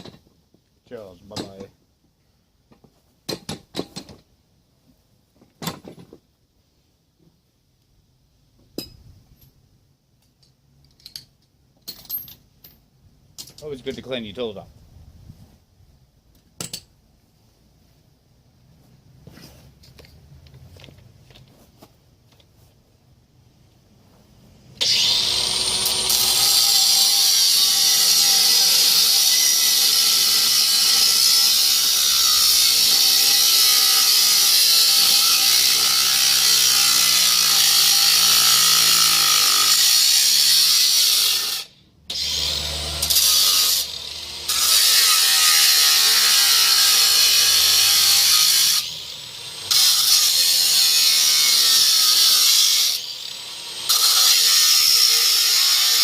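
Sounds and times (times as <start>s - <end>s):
angle grinder cutting metal: 24.8s - 56.0s.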